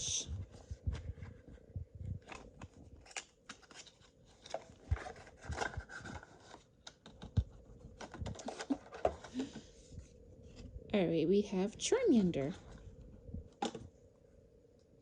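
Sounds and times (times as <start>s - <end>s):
cards clicking and rustling: 2.2s - 9.6s.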